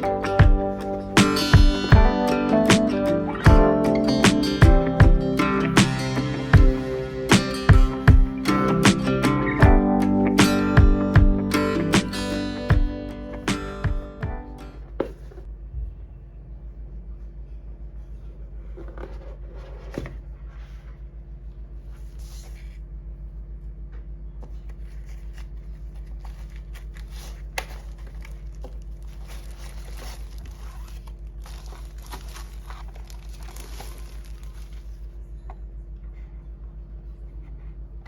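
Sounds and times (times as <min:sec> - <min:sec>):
steady low hum: 0:00.0 - 0:38.0
packaging crinkling and tearing: 0:24.8 - 0:35.1.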